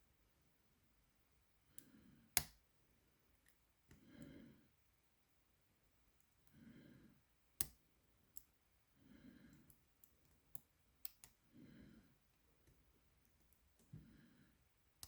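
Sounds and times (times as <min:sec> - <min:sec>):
soft breaths: 0:01.6 - 0:02.4, 0:03.9 - 0:04.9, 0:06.3 - 0:07.4, 0:08.8 - 0:10.4, 0:11.2 - 0:14.9.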